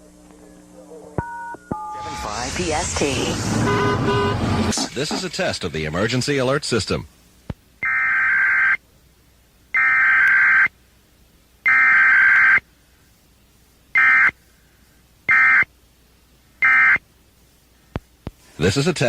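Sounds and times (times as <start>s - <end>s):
buzzing digital data tones: 1.3s - 4.7s.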